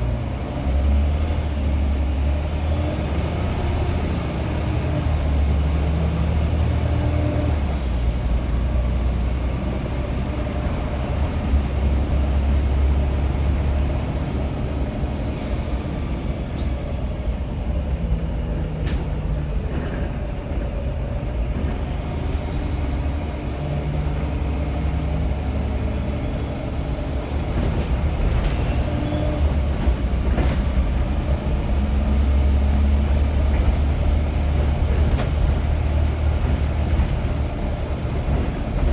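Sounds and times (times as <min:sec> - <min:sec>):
diesel bus engine under load: 0:00.0 - 0:38.9.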